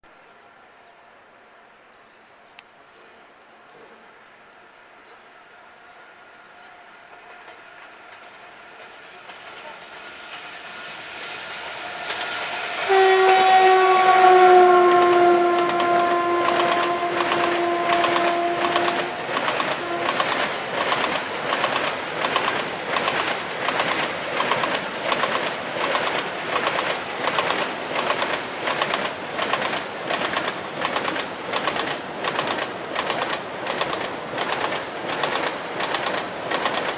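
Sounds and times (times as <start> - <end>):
train wheels clattering: 7.1 - 36.9
locomotive horn blast: 12.8 - 20.5.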